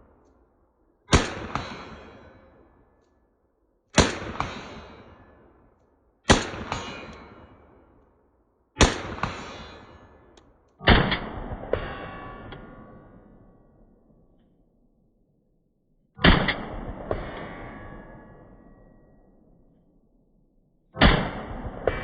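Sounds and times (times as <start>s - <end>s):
sharp crack: 1.1s - 2.5s, 8.8s - 10.5s
rifle shots: 1.1s - 2.6s, 4.0s - 5.4s, 6.3s - 7.8s, 8.8s - 10.3s.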